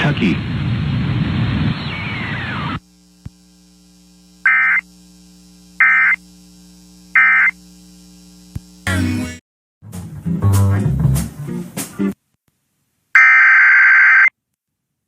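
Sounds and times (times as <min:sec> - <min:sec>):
steady electrical hum: 0:00.3 - 0:09.4
digital data tone bursts: 0:04.4 - 0:04.9, 0:05.8 - 0:06.2, 0:07.1 - 0:07.6.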